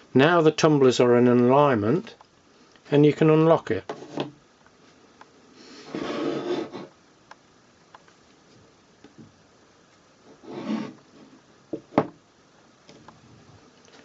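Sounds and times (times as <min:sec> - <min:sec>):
wood scraping on wood: 0:03.9 - 0:04.4, 0:05.7 - 0:06.9, 0:10.3 - 0:11.4.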